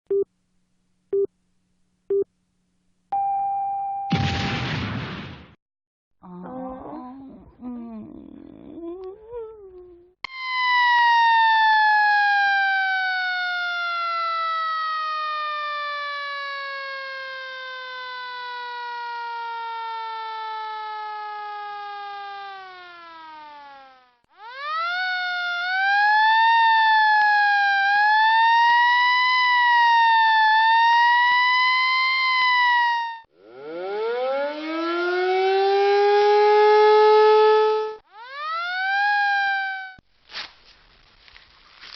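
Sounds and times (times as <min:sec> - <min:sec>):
siren falling in pitch: 0:10.2 - 0:40.0.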